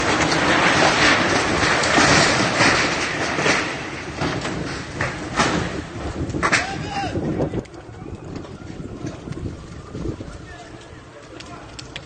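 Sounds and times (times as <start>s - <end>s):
sharp crack: 0.0s - 7.8s, 10.5s - 12.0s
distant explosions rumbling: 0.0s - 12.0s.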